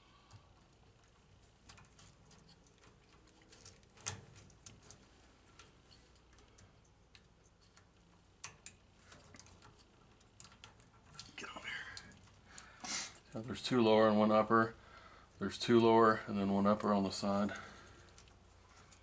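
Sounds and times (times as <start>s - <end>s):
small clicks of parts handled: 0.3s - 12.7s, 17.5s - 19.0s.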